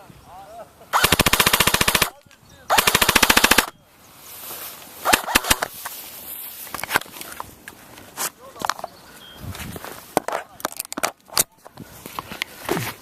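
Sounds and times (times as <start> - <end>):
sharp clicks: 1.0 - 3.7, 5.1 - 5.7
airsoft gun full auto bursts: 1.0 - 3.8, 5.1 - 5.7.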